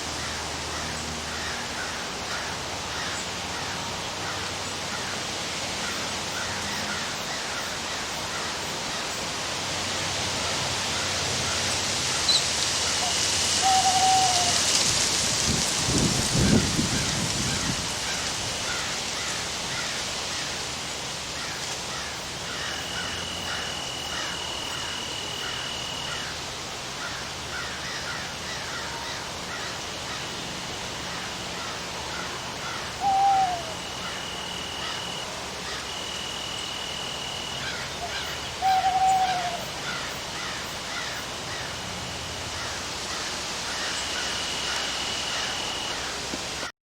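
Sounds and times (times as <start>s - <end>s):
rain hissing: 0.0s - 46.7s
owl hooting: 12.1s - 14.7s, 21.9s - 26.4s, 31.1s - 41.7s
high steady buzz: 20.9s - 28.3s, 29.2s - 46.7s.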